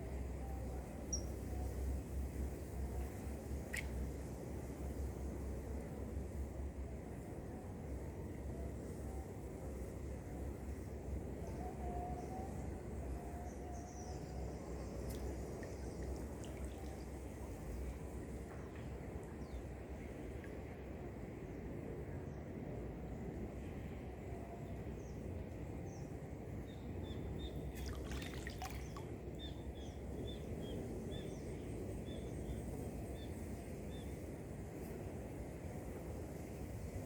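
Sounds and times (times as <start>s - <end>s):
low outdoor noise: 0.0s - 37.0s
trickling water: 15.1s - 17.9s, 27.7s - 29.2s.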